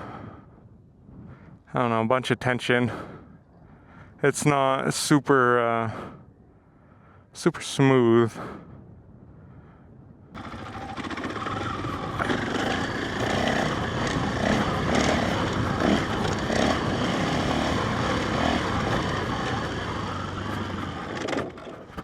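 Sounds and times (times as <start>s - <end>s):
dirt bike engine running: 10.4s - 22.0s.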